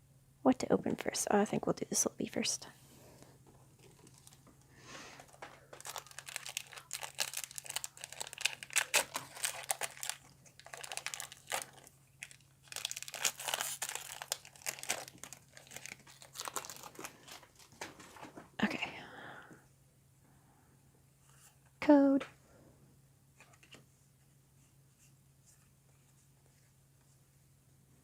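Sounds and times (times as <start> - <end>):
foil wrapper tearing and crinkling: 5.6 - 17.7.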